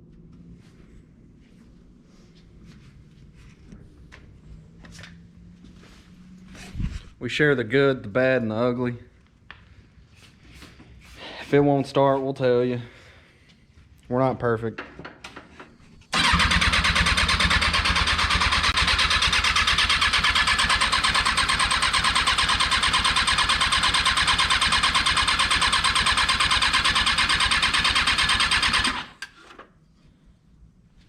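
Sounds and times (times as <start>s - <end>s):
engine cranking on starter: 16.1s - 29.6s.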